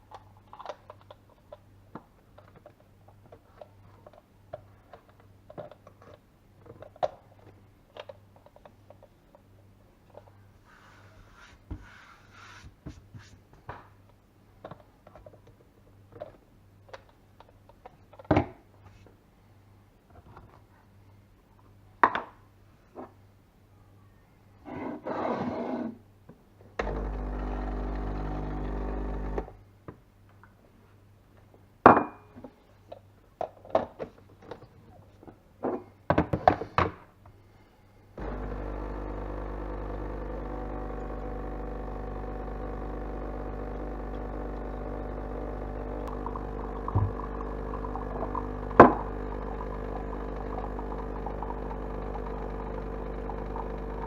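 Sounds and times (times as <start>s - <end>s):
espresso machine pump humming: 26.8s - 29.6s, 38.2s - 54.0s.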